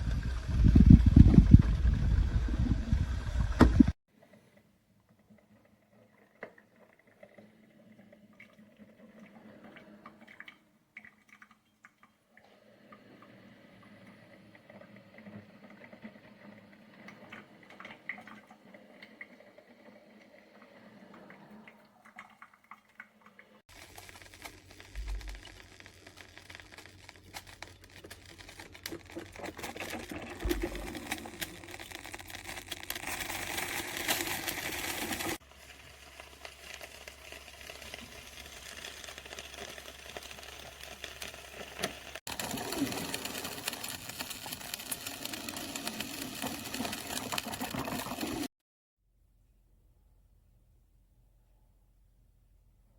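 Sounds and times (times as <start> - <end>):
coffee maker hissing and sputtering: 0.0 - 4.0, 12.6 - 21.0, 23.6 - 48.5.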